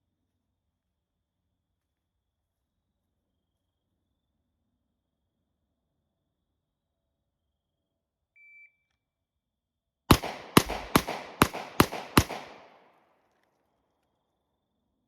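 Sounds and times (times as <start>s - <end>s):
pistol shots with echo: 10.1s - 13.0s.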